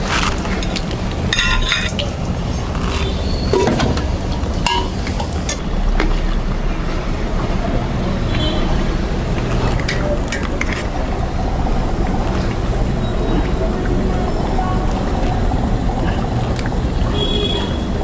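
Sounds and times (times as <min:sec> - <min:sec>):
utensil clinking against pan: 0:01.3 - 0:02.7, 0:03.5 - 0:05.2.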